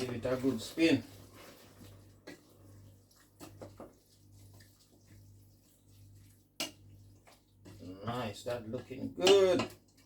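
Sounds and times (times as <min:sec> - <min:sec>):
spoon scraping a pot: 0:03.4 - 0:10.0.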